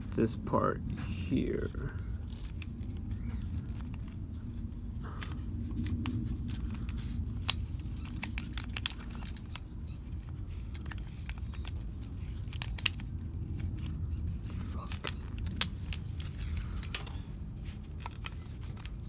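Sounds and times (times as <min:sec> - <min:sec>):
steady low rumble: 0:00.0 - 0:18.4
small parts clicking and rattling: 0:01.3 - 0:19.0.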